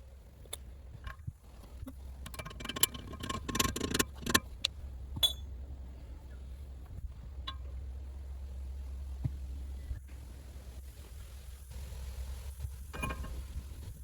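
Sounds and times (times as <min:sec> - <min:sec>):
steady low hum: 0:00.0 - 0:14.0
sharp ringing clink: 0:05.2 - 0:05.5.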